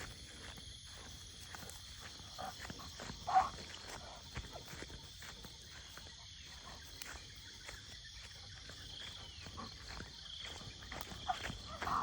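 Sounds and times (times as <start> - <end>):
insects droning: 0.0 - 12.0
light scattered ticks: 0.0 - 12.0.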